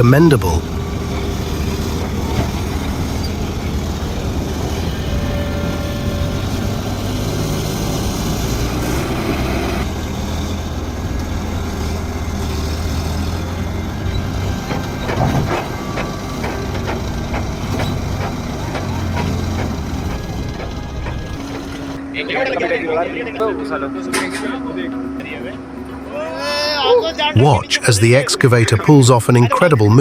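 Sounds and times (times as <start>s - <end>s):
heavy vehicle engine running: 0.0s - 30.0s
sharp knocks and clatter: 12.6s - 22.0s.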